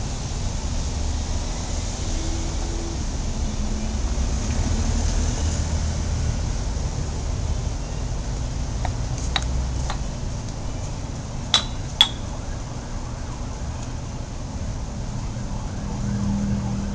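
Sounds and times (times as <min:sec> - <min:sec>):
low rumble of street traffic: 0:00.0 - 0:16.9
sharp clinks: 0:11.6 - 0:12.4.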